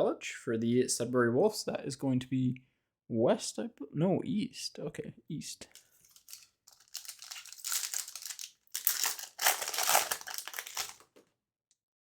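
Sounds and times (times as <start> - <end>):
wrapper crinkling: 5.7 - 11.2.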